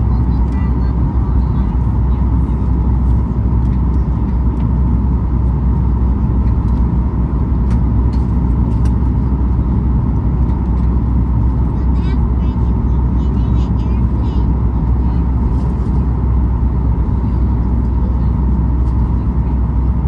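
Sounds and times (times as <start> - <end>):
aircraft engines: 0.0 - 20.0
steady cabin hum: 0.0 - 20.0.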